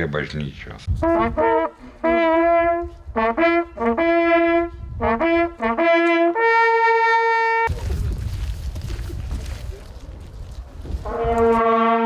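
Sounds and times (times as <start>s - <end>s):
hunting horn fanfare: 1.0s - 7.7s, 11.0s - 12.0s.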